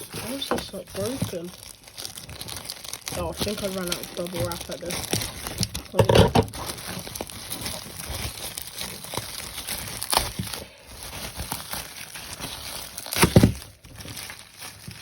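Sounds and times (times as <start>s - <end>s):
packing material crinkling: 0.0s - 15.0s.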